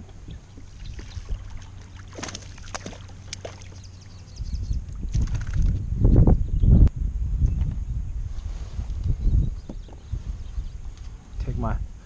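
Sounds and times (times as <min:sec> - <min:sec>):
water splashing around kayak: 0:00.0 - 0:04.1
wind rumble on microphone: 0:00.0 - 0:12.0
sharp splashes or knocks: 0:00.8 - 0:03.8.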